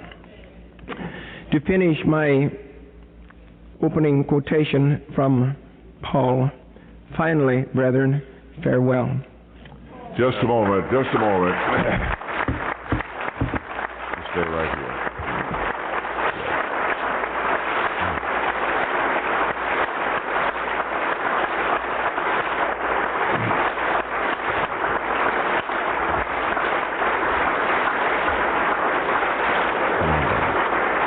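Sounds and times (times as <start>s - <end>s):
large audience applauding: 10.4s - 31.0s.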